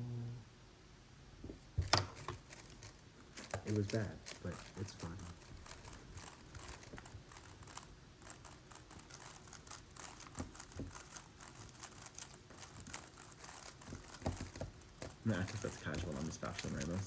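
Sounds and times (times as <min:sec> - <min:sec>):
plastic puzzle clicking: 0:01.8 - 0:17.0.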